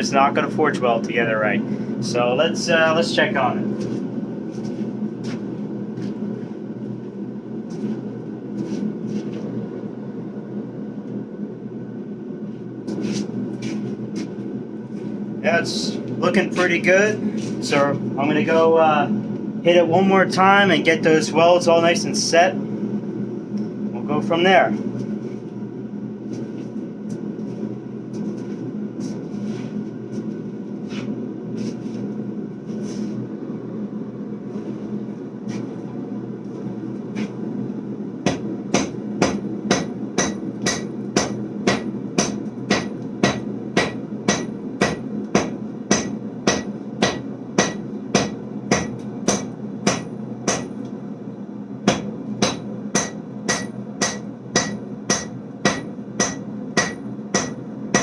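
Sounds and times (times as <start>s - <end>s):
hammer striking steel on anvil: 38.2s - 50.8s, 51.9s - 58.0s.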